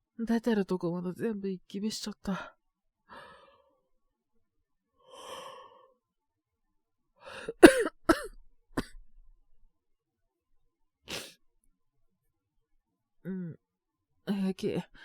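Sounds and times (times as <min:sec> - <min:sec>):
soft breath: 0:03.1 - 0:03.8, 0:05.0 - 0:06.0
person coughing: 0:07.5 - 0:08.9.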